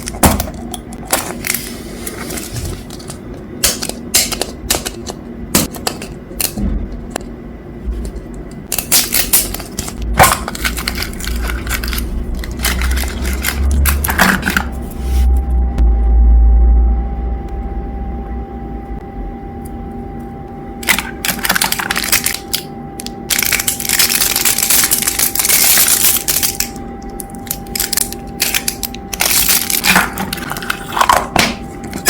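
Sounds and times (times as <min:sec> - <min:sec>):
faint steady hum: 0:00.0 - 0:32.0
plastic crinkling and crunching: 0:08.8 - 0:14.7, 0:20.8 - 0:32.0.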